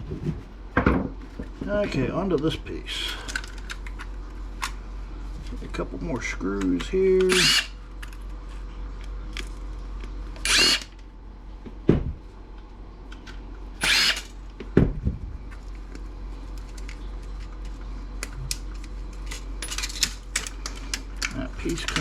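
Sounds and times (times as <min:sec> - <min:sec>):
electric screwdriver running: 0:07.3 - 0:07.7, 0:10.4 - 0:10.9, 0:13.8 - 0:14.3.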